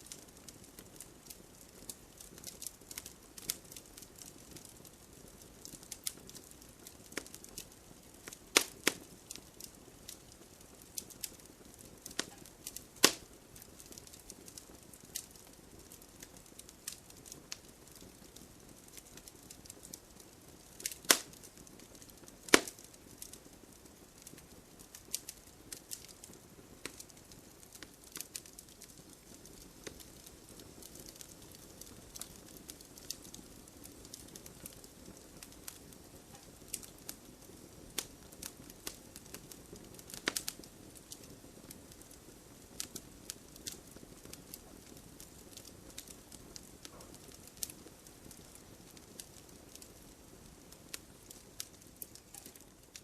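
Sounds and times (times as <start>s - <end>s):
campfire crackling: 0.0s - 53.0s
loud wood snaps: 13.0s - 13.2s, 20.8s - 21.3s, 22.5s - 22.8s.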